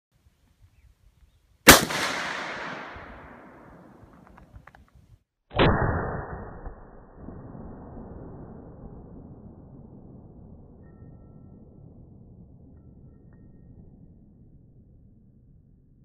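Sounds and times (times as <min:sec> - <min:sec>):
rifle shot with echo: 0:01.7 - 0:04.3
dull loud boom: 0:05.6 - 0:15.1.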